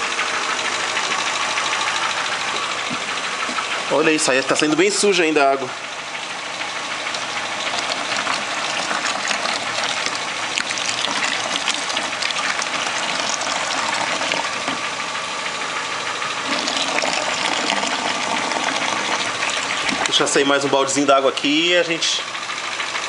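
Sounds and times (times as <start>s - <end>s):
car engine idling: 0.0s - 23.0s
water gushing into a bucket: 0.0s - 23.0s.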